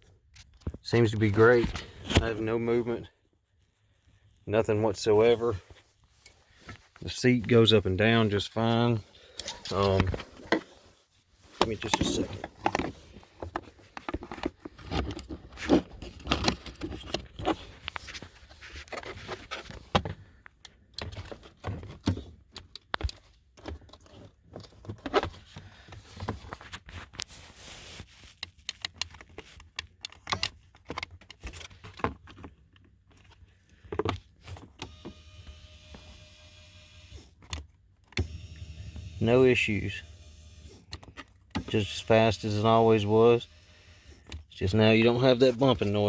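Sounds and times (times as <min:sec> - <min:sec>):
handling clicks and rattles: 0:08.6 - 0:10.7, 0:11.5 - 0:27.3, 0:28.3 - 0:34.9.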